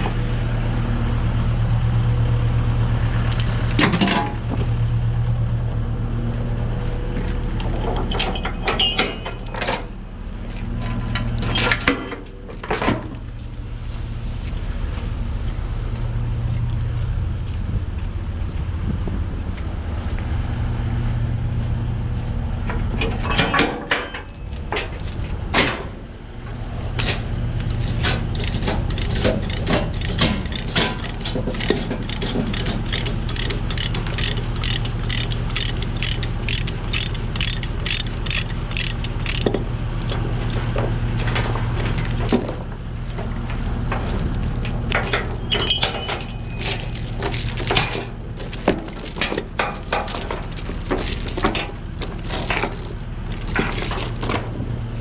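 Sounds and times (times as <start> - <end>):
engine idling hum: 0.0 - 55.0
hand ratchet clicking: 32.1 - 39.5.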